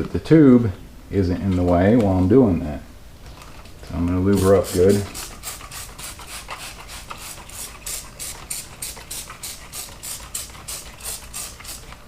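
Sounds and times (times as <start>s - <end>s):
scrubbing tire with lubricant: 4.1s - 12.0s.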